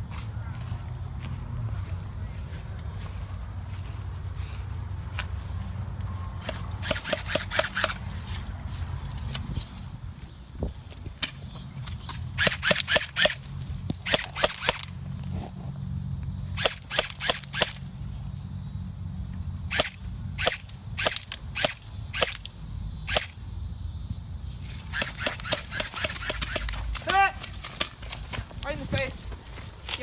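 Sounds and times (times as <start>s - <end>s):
airsoft guns firing: 6.4s - 8.0s, 12.4s - 13.4s, 14.0s - 14.9s, 16.6s - 17.8s, 19.7s - 22.4s, 24.9s - 27.9s.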